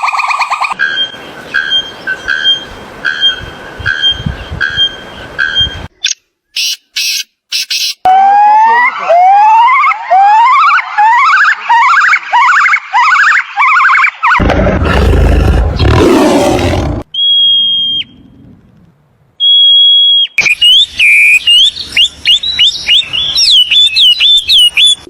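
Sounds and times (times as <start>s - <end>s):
swooping chirping calls: 0.0s - 8.0s, 19.4s - 25.0s
siren-like wailing calls: 8.1s - 14.4s
harsh noisy roar: 14.4s - 17.1s.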